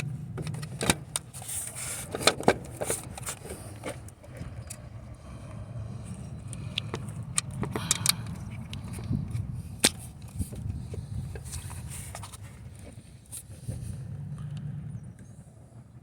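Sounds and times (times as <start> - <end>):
steady low rumble: 3.5 - 16.0.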